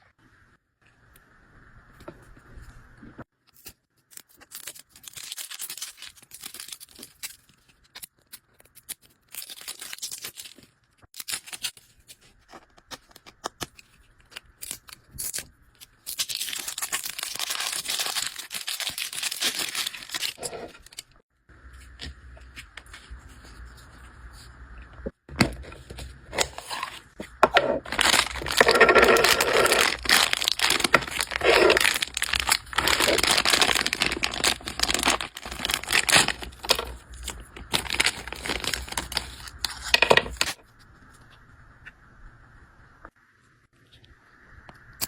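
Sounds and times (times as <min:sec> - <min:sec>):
plastic packaging tearing and crinkling: 0:03.6 - 0:21.2, 0:27.8 - 0:40.6.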